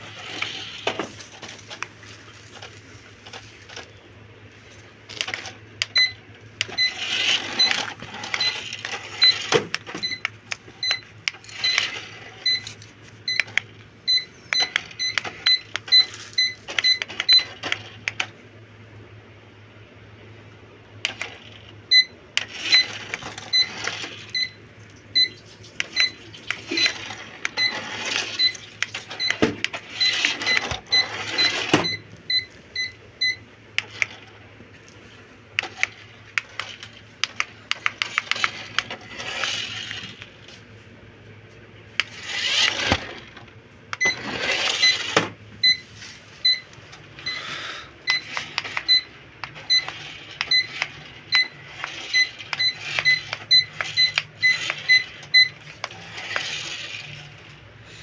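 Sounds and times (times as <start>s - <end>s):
rustling and clattering: 0.2s - 3.9s.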